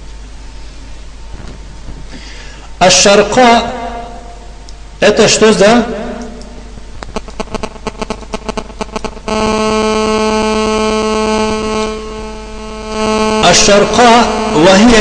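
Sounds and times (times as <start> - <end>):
low electronic buzz: 0.0 - 15.0
rapid clicks: 7.0 - 9.5.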